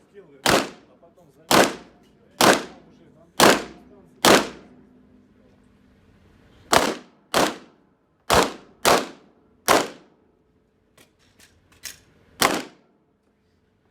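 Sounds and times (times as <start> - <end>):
pistol shots echoing: 0.4 - 0.9, 1.5 - 2.8, 3.4 - 4.7, 6.7 - 7.7, 8.3 - 10.1, 12.4 - 12.8.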